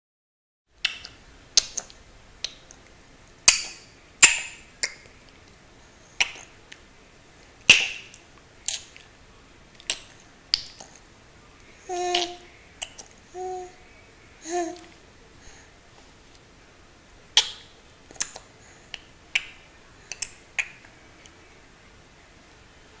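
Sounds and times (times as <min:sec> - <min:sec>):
child clicking with mouth: 0:12.0 - 0:13.1.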